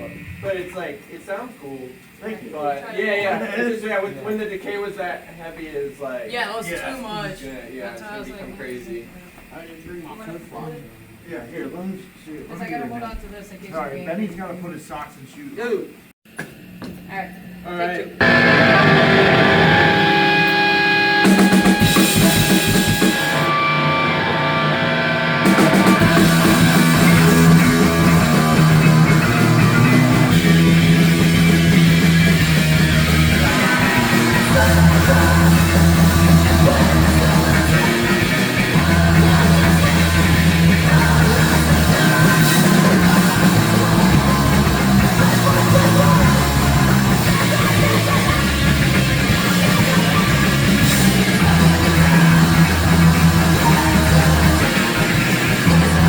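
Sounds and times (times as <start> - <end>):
drums: 0.0 - 2.2, 18.2 - 56.0
bass guitar riff: 18.2 - 56.0
distorted electric guitar: 18.2 - 56.0.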